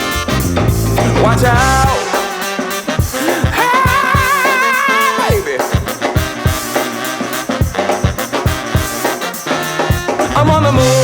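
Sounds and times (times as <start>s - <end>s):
upbeat funk-pop music: 0.0s - 11.0s.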